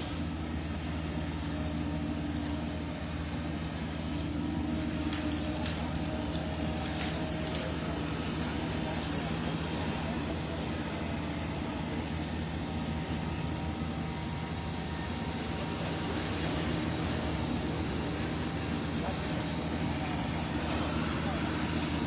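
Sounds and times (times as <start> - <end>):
diesel engine drone: 0.0 - 22.0.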